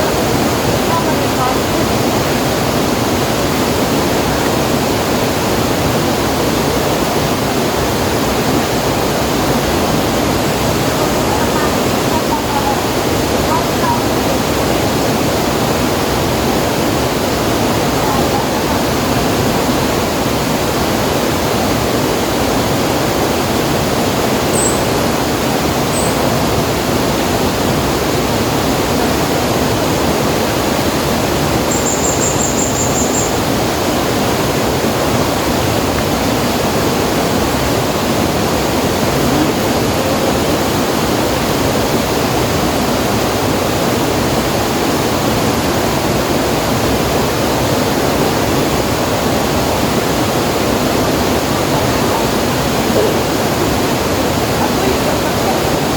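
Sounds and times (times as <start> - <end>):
river water rushing: 0.0 - 55.9
faint high chirps: 31.7 - 33.4.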